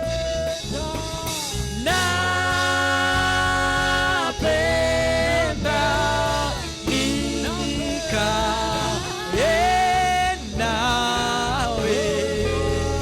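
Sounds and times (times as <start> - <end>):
band playing worship music: 0.0 - 13.0
person singing long phrases: 0.0 - 13.0
steady bass line: 0.0 - 13.0.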